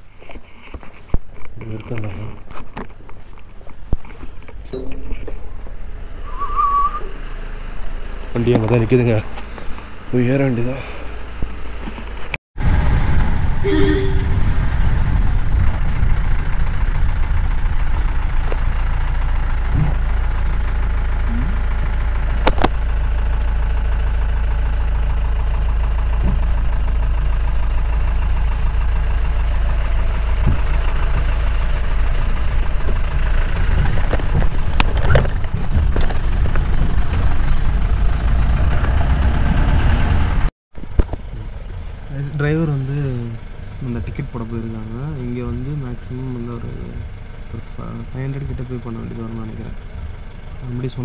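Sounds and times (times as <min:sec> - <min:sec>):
jeep engine droning: 0:05.0 - 0:51.0.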